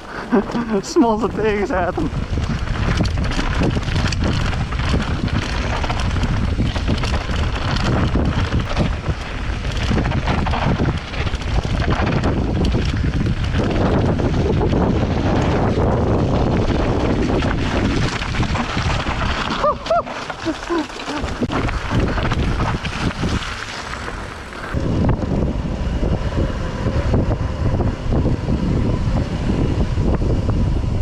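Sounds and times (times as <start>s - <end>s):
bike rattling and knocking: 0.0s - 24.8s
wind buffeting microphone: 0.0s - 31.0s.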